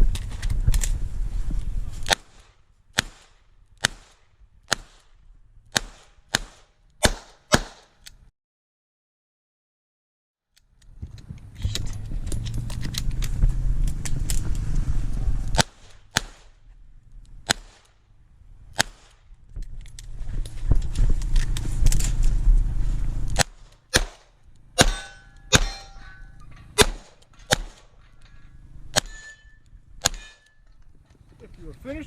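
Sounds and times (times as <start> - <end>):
rumbling movement noise: 0.0 - 5.7, 10.7 - 32.0
revolver gunshots: 2.1 - 5.1, 5.7 - 8.0, 15.5 - 16.6, 17.4 - 18.0, 18.7 - 19.3, 23.4 - 28.0
steel targets ringing: 24.8 - 26.8, 29.0 - 30.7.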